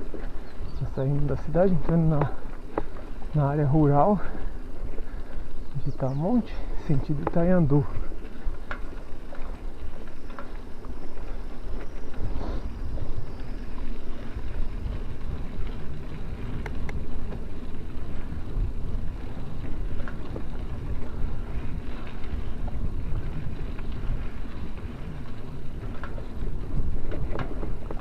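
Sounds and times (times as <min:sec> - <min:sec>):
wind buffeting microphone: 0:00.0 - 0:28.0
faint ticks: 0:01.2 - 0:03.4, 0:04.2 - 0:12.3, 0:16.5 - 0:17.4.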